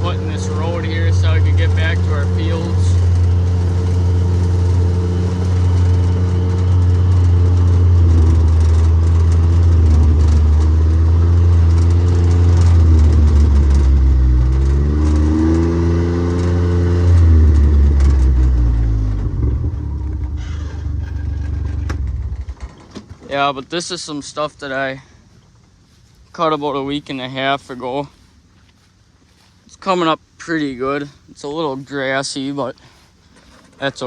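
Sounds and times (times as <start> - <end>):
vehicle engine running: 0.0 - 22.8.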